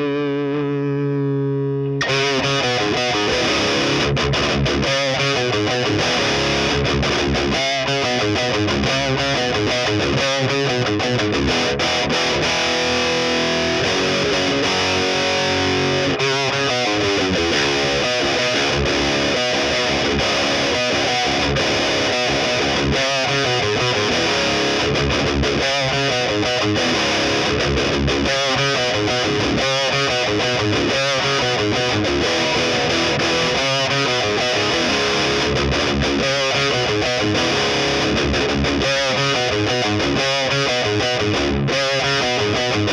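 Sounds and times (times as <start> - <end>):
overdriven electric guitar riff: 0.0 - 42.9.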